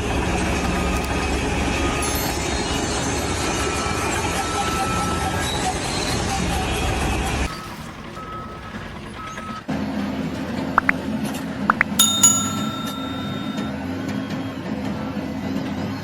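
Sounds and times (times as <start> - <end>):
bell-like metallic ring: 12.0 - 13.7.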